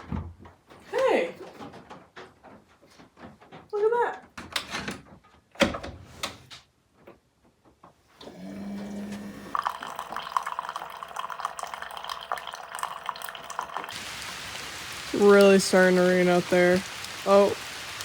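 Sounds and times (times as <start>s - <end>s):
coffee maker humming: 8.2s - 18.0s
coffee streaming into mug: 8.2s - 18.0s.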